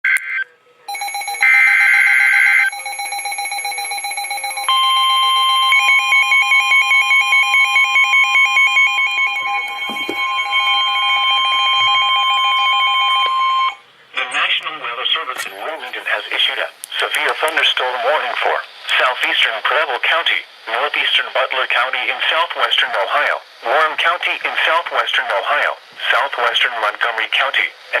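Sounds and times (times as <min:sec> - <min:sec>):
beeping tones: 0:00.9 - 0:14.5
harsh data tones: 0:00.9 - 0:16.7
steady alert tone: 0:02.8 - 0:13.8.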